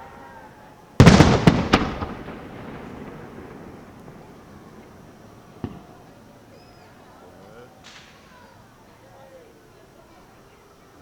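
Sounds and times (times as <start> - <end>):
fireworks bursting: 0.0 - 9.0
booming echo: 1.0 - 6.3.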